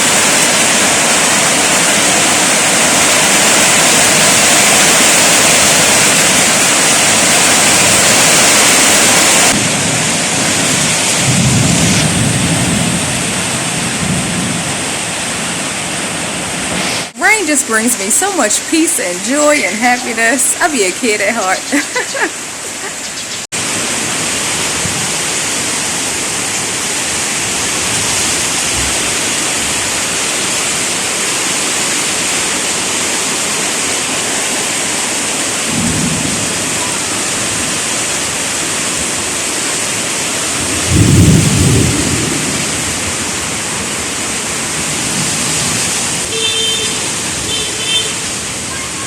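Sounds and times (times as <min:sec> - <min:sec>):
heavy rain falling: 0:00.0 - 0:49.0
low thunder rumbles: 0:09.5 - 0:15.5, 0:35.6 - 0:38.4, 0:40.5 - 0:45.8.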